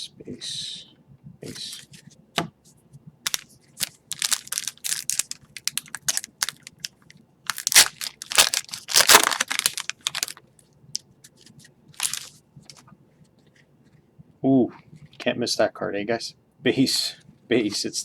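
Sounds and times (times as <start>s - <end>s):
wrapper tearing and crinkling: 3.3s - 10.4s, 12.0s - 12.4s.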